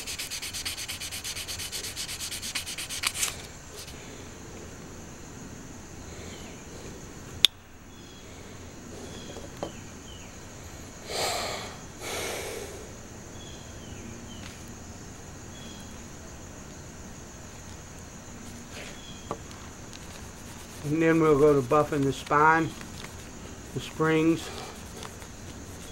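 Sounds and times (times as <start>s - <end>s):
sandpaper sanding steel blade: 0.0s - 3.5s, 22.6s - 25.9s.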